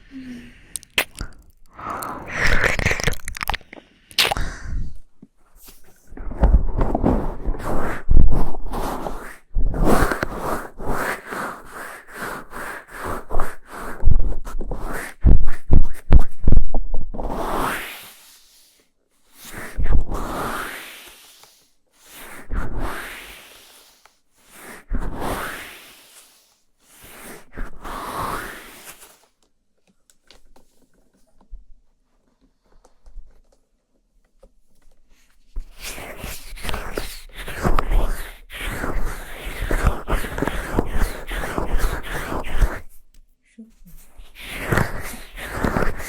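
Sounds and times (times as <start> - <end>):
breaths into microphone: 0.0 - 2.8, 3.5 - 5.1
scratchy rubbing on microphone: 2.3 - 3.7, 5.6 - 18.6, 19.4 - 29.3, 35.6 - 43.0, 43.8 - 46.0.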